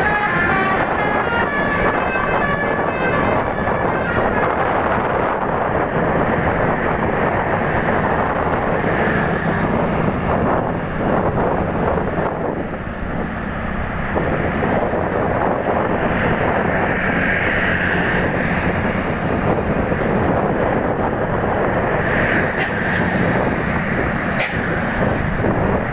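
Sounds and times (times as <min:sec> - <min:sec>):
vehicle noise: 0:00.0 - 0:25.9
wind buffeting microphone: 0:00.0 - 0:25.9.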